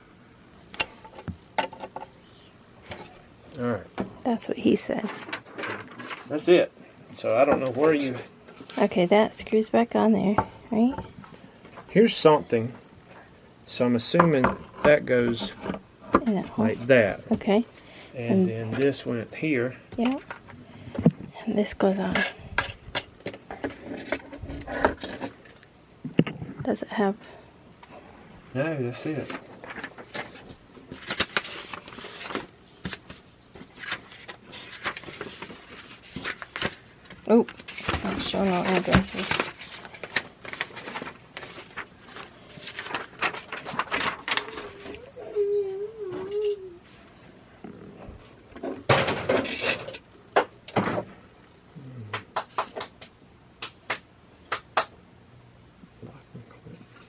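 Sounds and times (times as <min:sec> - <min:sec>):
rustling: 0:28.9 - 0:47.2.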